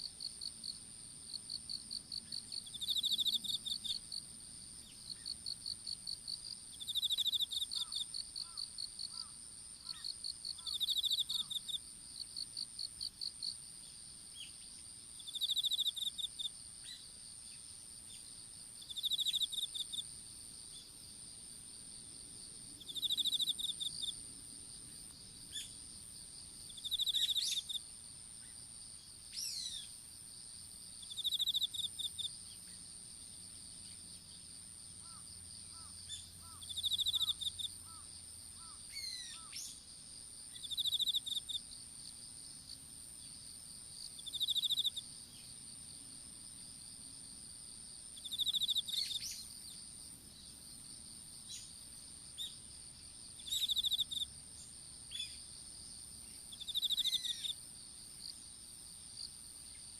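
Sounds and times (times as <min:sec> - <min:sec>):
continuous high insect trill: 0:00.0 - 0:59.9
pulsed chirping insect trill: 0:06.8 - 0:13.6, 0:15.2 - 0:17.1, 0:18.8 - 0:20.1, 0:22.8 - 0:24.2, 0:26.7 - 0:27.9, 0:31.0 - 0:32.4, 0:35.0 - 0:39.8, 0:40.5 - 0:41.6, 0:44.0 - 0:45.5, 0:48.2 - 0:49.8, 0:53.3 - 0:54.3, 0:56.3 - 0:57.6.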